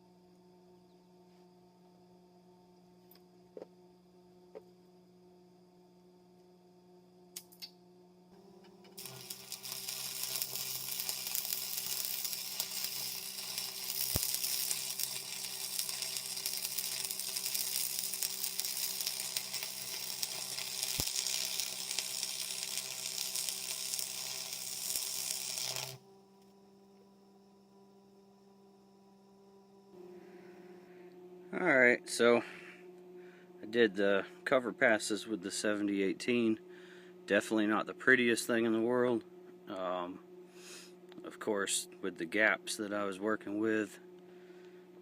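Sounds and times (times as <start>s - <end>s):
electrical hum: 0.0s - 45.0s
welding arc crackling sizzle: 8.7s - 26.0s.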